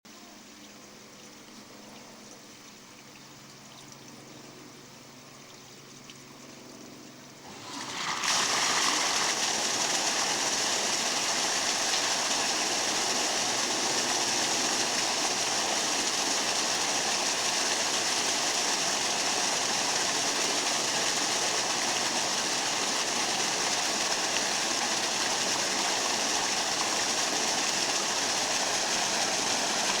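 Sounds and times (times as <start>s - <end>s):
water rushing into pool: 7.4s - 30.0s.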